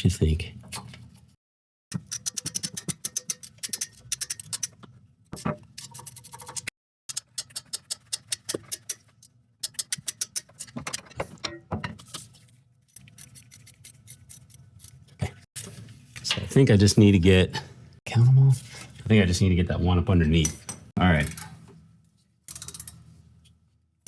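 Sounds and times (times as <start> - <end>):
hand ratchet clicking rapidly: 1.9 - 4.7.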